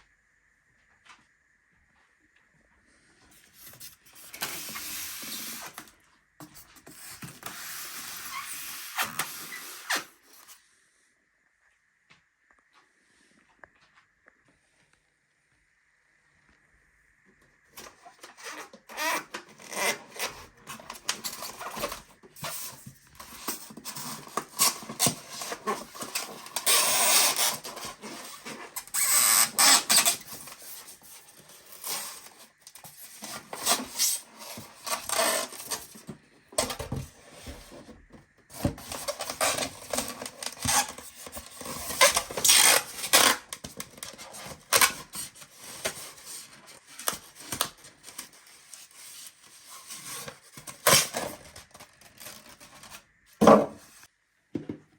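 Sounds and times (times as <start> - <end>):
plastic packaging handled: 17.8 - 54.1.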